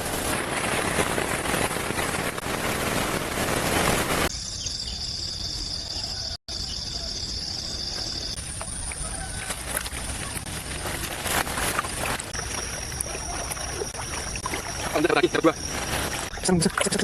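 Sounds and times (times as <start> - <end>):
insects chirring: 4.3 - 17.0.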